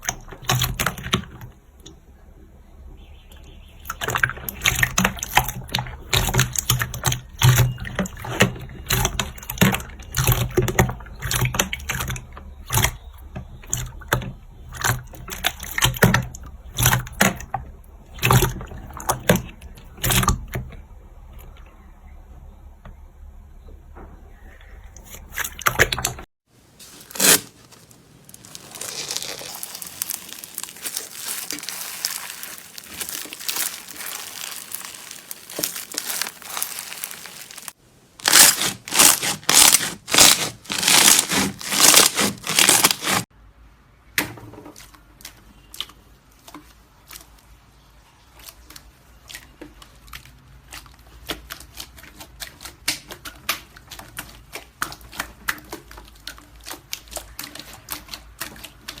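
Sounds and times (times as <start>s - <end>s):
slime crackling and popping: 26.8s - 43.3s.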